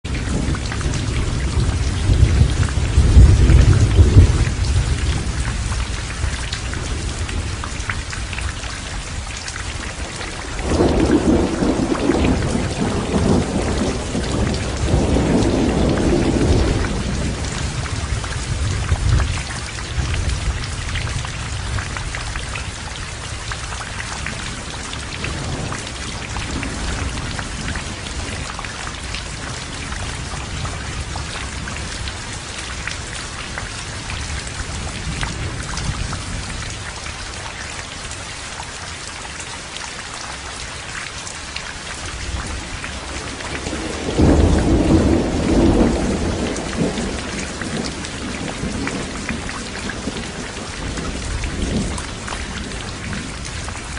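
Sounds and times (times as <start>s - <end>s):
heavy rain falling: 0.0s - 53.9s
thunder rumbling: 0.1s - 8.5s, 9.8s - 22.9s, 42.1s - 53.9s.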